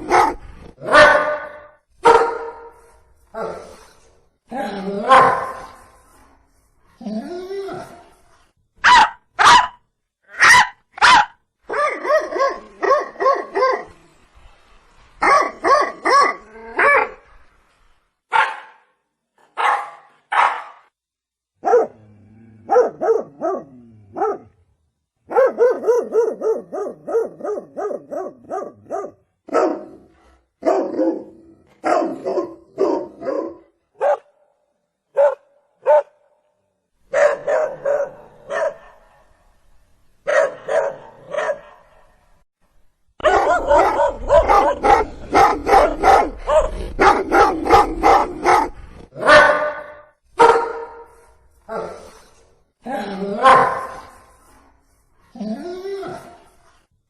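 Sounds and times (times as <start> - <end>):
dog barking: 0.0 - 2.8, 5.1 - 5.8, 8.8 - 13.9, 15.2 - 17.2, 18.3 - 18.9, 19.5 - 20.9, 21.6 - 22.0, 22.7 - 24.5, 25.3 - 34.4, 35.1 - 36.2, 37.1 - 39.2, 40.3 - 42.1, 43.2 - 51.3, 53.4 - 54.1.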